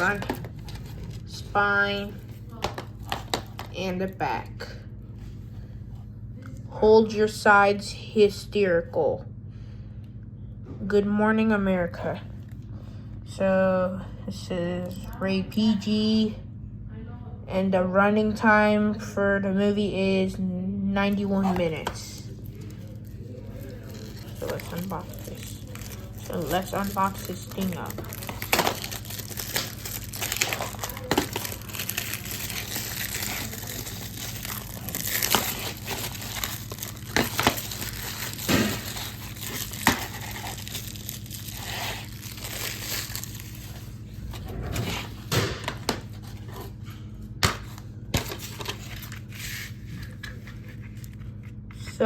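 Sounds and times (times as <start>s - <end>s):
plastic wrap tearing and crinkling: 0.0s - 1.4s, 21.4s - 44.2s.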